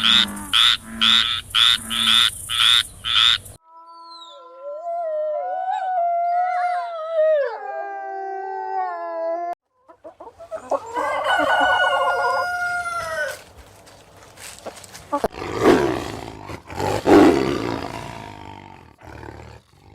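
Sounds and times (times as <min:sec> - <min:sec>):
rooster crowing: 0:10.8 - 0:13.5.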